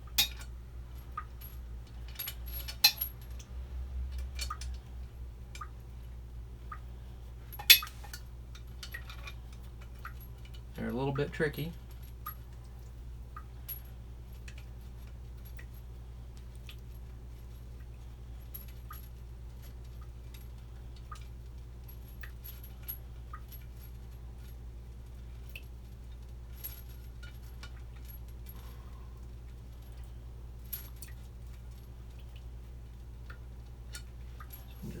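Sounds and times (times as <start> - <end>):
steady low hum: 0.0 - 35.0
metal fittings clicking: 7.6 - 8.2.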